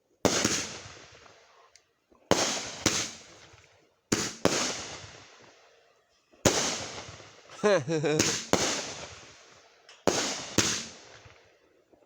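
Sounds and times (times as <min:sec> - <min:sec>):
firework bangs: 0:02.3 - 0:03.2, 0:06.5 - 0:09.3, 0:10.0 - 0:11.0.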